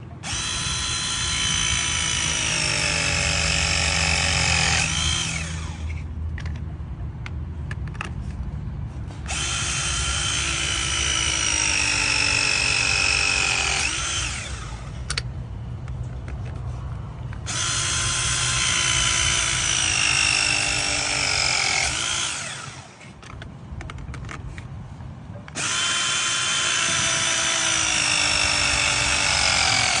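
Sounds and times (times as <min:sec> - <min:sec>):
press tool motor whining: 0:00.2 - 0:06.0, 0:09.2 - 0:15.2, 0:17.4 - 0:23.2, 0:25.5 - 0:30.0
tool clicks: 0:03.3 - 0:08.4, 0:09.2 - 0:18.0, 0:18.6 - 0:24.7.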